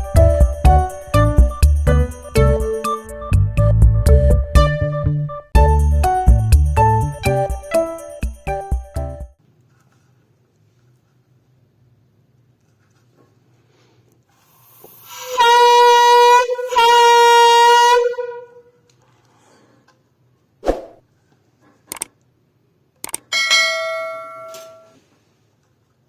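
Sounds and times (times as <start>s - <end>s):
horn blasts: 15.1s - 18.6s
metallic ring: 23.3s - 25.0s.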